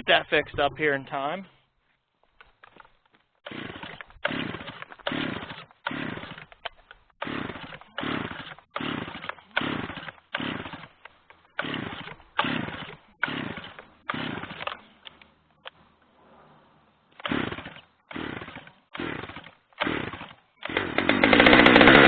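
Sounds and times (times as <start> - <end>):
chainsaw revving: 3.4 - 6.5, 7.2 - 11.0, 11.6 - 14.8, 17.2 - 22.0.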